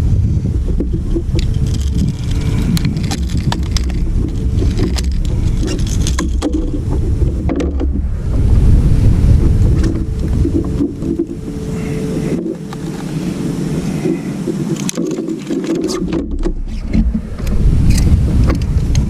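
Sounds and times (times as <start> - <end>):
faint steady hum: 0.0 - 19.0
wind buffeting microphone: 0.0 - 19.0
sharp clicks and knocks: 0.5 - 8.5, 14.5 - 19.0.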